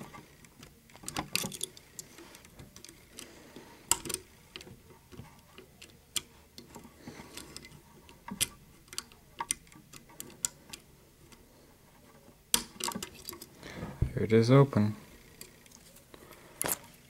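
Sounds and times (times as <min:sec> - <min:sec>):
lock picks clicking and scraping: 0:00.0 - 0:11.4, 0:12.1 - 0:13.6.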